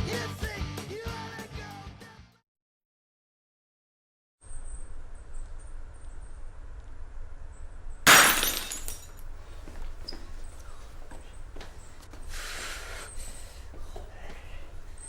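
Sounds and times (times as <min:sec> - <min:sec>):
loud crash of breaking: 0:08.1 - 0:09.2.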